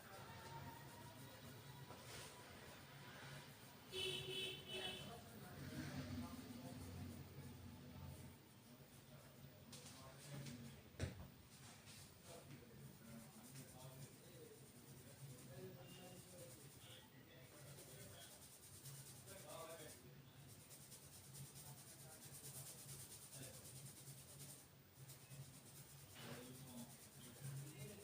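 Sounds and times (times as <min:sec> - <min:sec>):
hands rubbing hair and scalp: 0:17.6 - 0:28.0.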